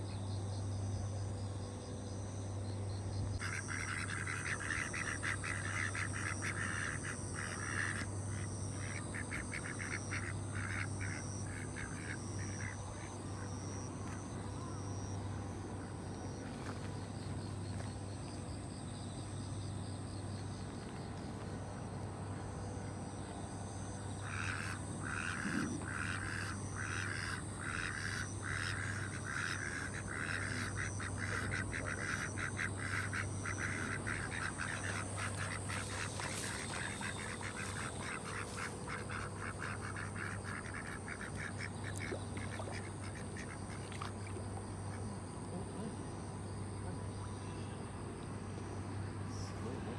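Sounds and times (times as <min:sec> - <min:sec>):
steady low hum: 0:00.0 - 0:49.9
rapid repeated animal calls: 0:03.4 - 0:15.2, 0:24.1 - 0:43.8.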